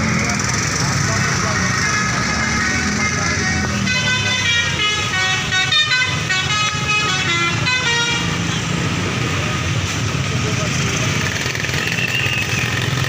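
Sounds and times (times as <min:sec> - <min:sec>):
multi-tone musical bus horn: 0:03.6 - 0:08.5.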